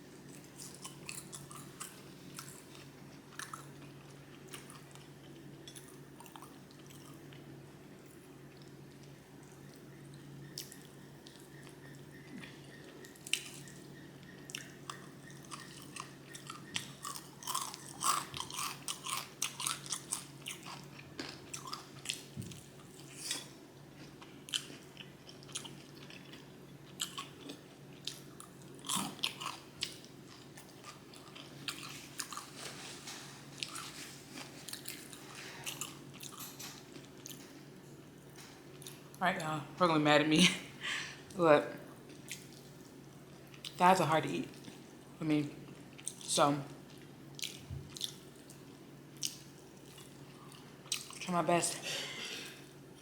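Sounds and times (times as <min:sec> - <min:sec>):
faint steady hum: 0:00.0 - 0:53.0
person chewing and lip smacking: 0:00.2 - 0:07.4, 0:08.5 - 0:32.9, 0:33.6 - 0:37.6, 0:42.1 - 0:43.8, 0:46.9 - 0:51.2
food crunching: 0:00.2 - 0:37.8, 0:45.6 - 0:51.2.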